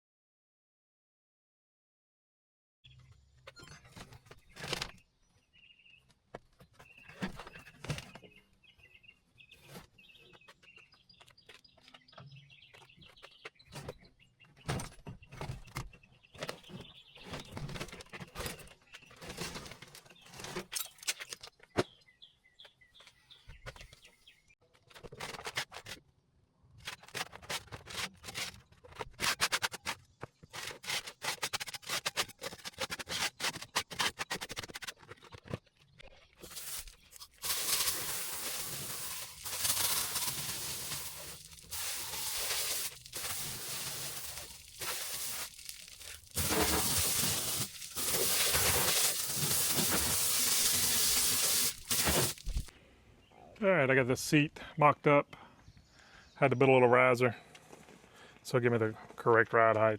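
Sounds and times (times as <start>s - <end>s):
birds chirping: 2.8s - 24.6s, 46.0s - 57.5s.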